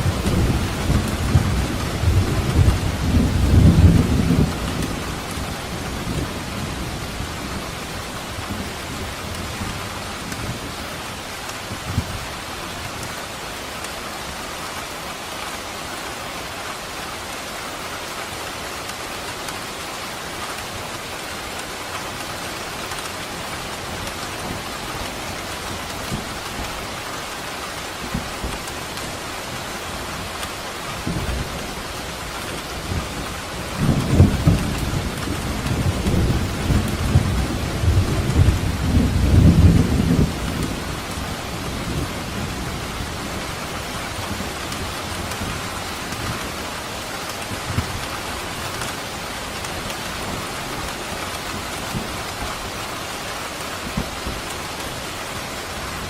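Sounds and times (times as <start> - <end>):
thunder rumbling: 0.0 - 9.2, 31.0 - 52.8
steady rain falling: 0.0 - 56.0.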